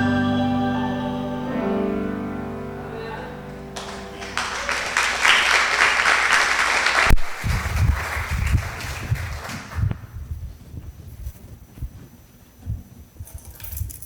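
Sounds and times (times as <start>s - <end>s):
voices singing: 0.0s - 4.3s
piano chord: 0.0s - 5.2s
congregation applause: 3.7s - 10.0s.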